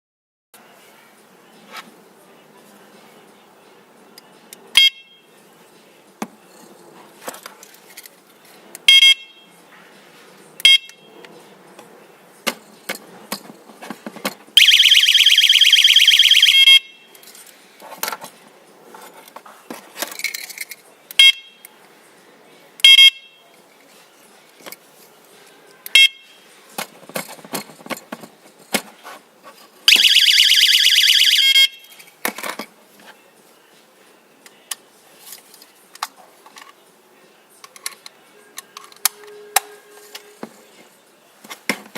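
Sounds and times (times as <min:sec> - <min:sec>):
motorcycle alarm chirps and siren: 0:14.6 - 0:17.1, 0:29.9 - 0:31.9.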